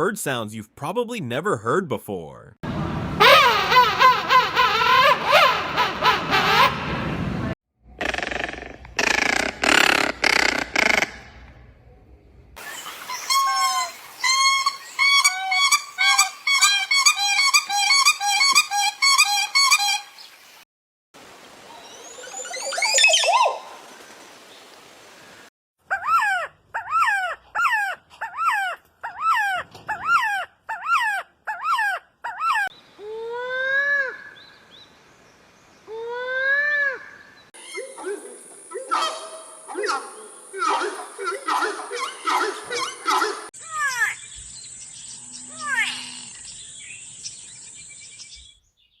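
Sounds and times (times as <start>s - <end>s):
bird call rising and falling: 12.6s - 20.6s, 21.6s - 24.7s
bird calls sweeping upward: 12.6s - 20.6s, 21.7s - 24.7s, 36.8s - 49.0s.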